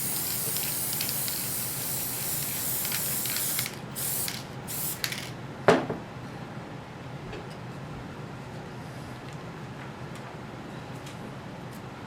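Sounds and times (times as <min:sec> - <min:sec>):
aerosol can spraying: 0:00.0 - 0:05.2.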